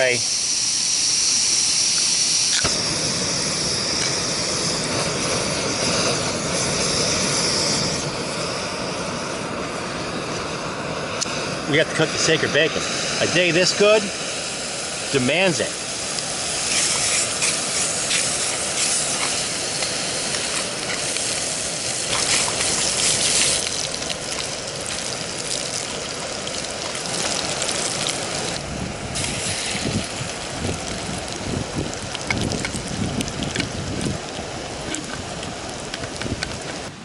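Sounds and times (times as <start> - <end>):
bacon sizzling in a frying pan: 12.8 - 36.7.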